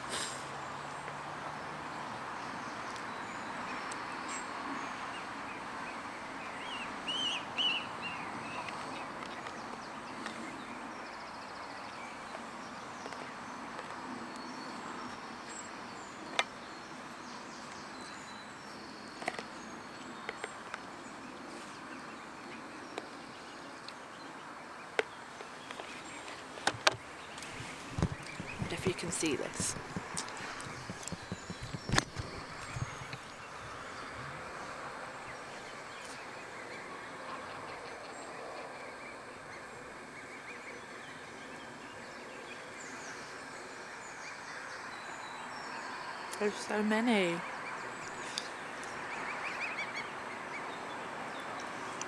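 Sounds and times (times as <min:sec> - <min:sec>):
bird calls: 0:14.4 - 0:34.4
sharp clicks: 0:26.6 - 0:33.3.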